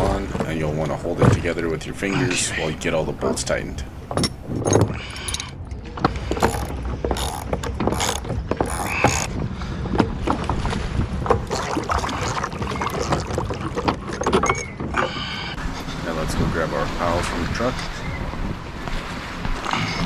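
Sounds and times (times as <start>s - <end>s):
socket wrench clicks and knocks: 6.4s - 9.3s.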